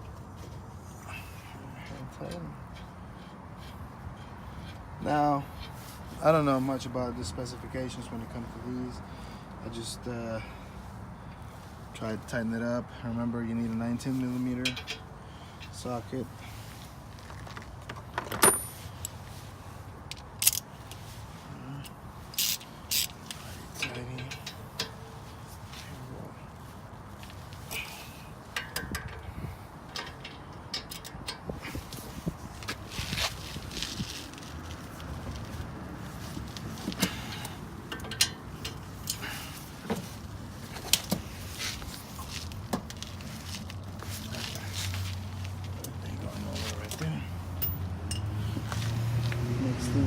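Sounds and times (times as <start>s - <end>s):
socket wrench ratcheting: 22.4s - 23.4s
metal clicks of hand tools: 29.9s - 31.5s, 37.0s - 39.2s.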